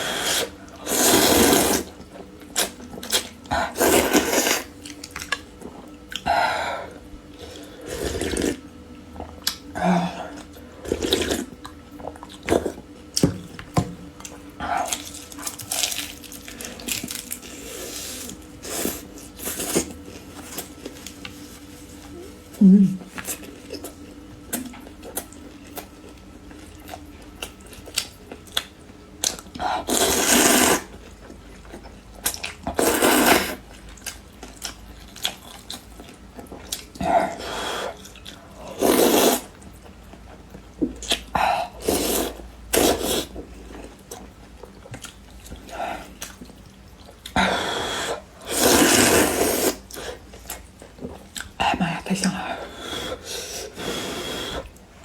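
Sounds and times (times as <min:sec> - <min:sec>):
slurping and biting: 0:00.1 - 0:01.9, 0:02.6 - 0:04.8, 0:29.9 - 0:31.0, 0:32.7 - 0:33.6, 0:48.1 - 0:50.2.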